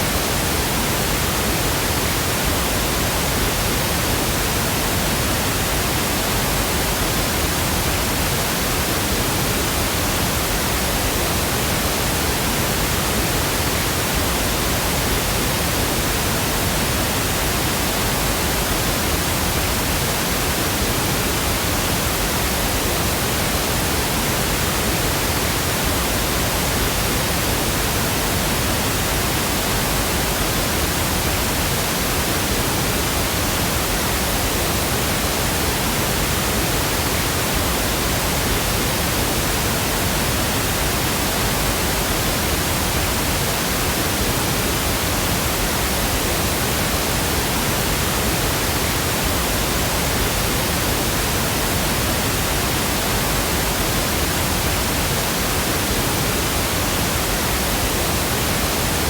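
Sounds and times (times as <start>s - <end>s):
pink noise hiss: 0.0s - 59.0s.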